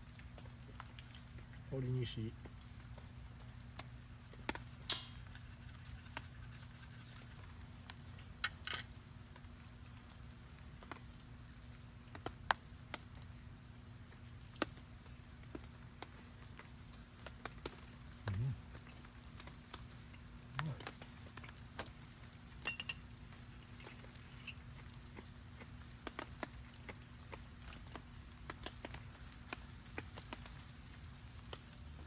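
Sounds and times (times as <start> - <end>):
raindrops tapping: 0.0 - 8.4
low steady hum: 0.0 - 32.0.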